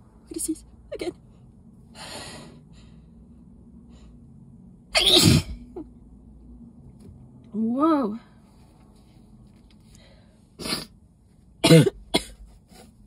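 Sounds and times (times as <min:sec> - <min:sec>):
woman sneezing loudly: 0:05.0 - 0:05.6.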